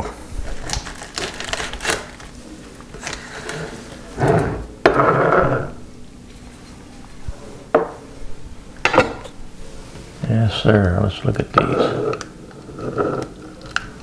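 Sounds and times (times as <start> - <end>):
scraping and handling sounds: 0.0 - 8.0.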